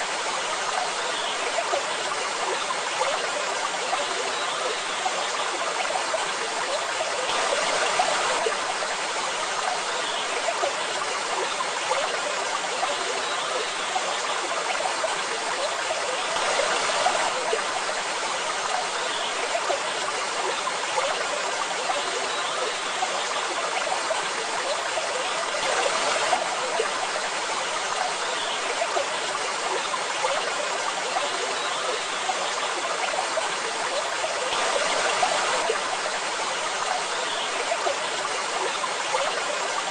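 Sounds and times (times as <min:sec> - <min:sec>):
waterfall rushing: 0:07.2 - 0:09.9, 0:31.6 - 0:39.1.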